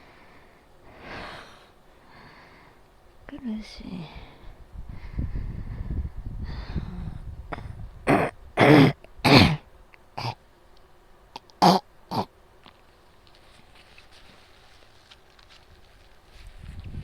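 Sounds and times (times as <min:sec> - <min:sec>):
person coughing harshly: 0:08.1 - 0:09.6, 0:11.6 - 0:12.3.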